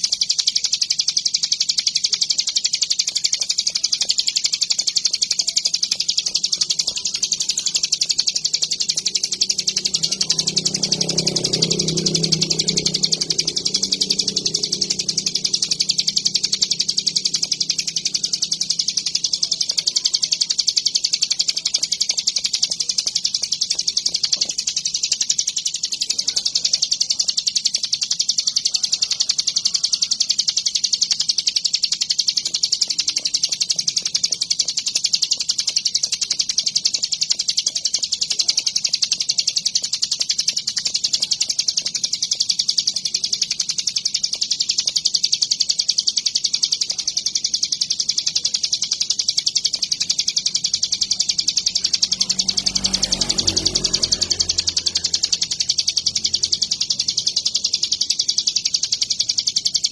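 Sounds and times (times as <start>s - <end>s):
songbird singing fast chatter: 0.0s - 59.9s.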